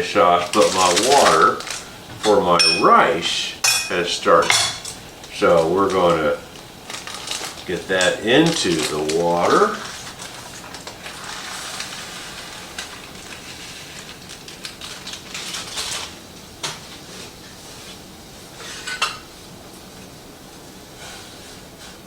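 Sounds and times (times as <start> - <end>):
boiling water bubbling: 0.0 - 22.0
pot and utensil clinks: 2.6 - 3.0, 3.6 - 5.0.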